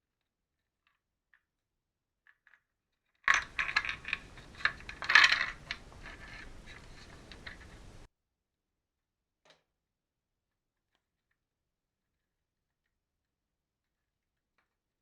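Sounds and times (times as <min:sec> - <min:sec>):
small metal objects clinking: 0:03.3 - 0:08.1.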